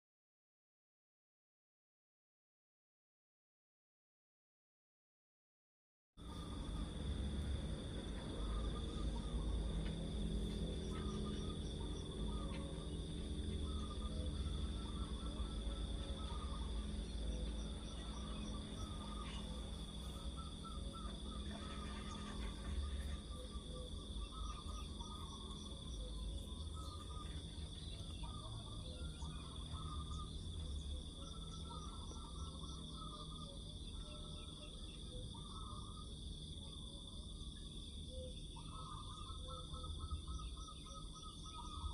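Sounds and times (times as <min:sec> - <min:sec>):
low chirps: 0:06.2 - 0:36.2
insects chirring: 0:06.2 - 0:41.9.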